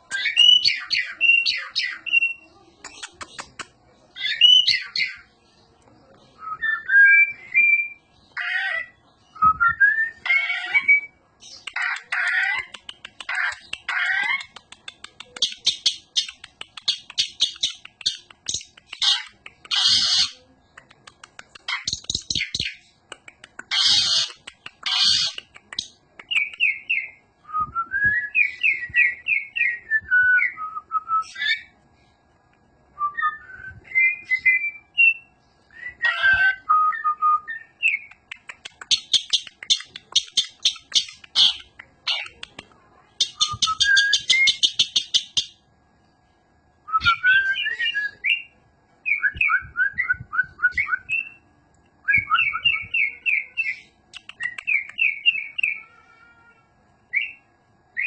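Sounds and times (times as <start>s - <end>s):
starling harsh rasping chatter: 10.1s - 26.4s.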